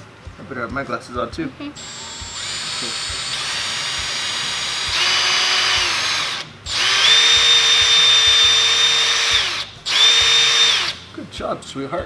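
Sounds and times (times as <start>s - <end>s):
electric drill whining: 1.8s - 11.1s.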